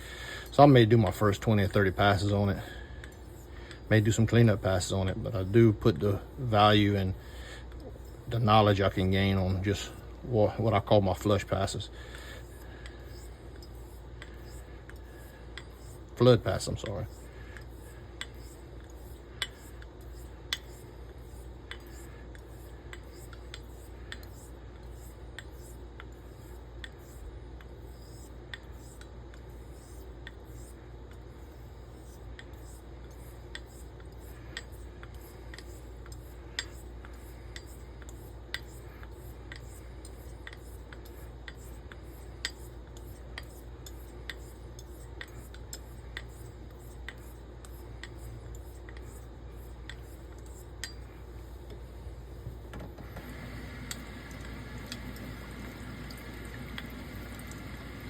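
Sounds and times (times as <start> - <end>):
razor rubbing on whetstone: 0.6 - 7.0, 10.6 - 51.1
steel clicking on stone: 12.6 - 31.2, 32.0 - 51.1.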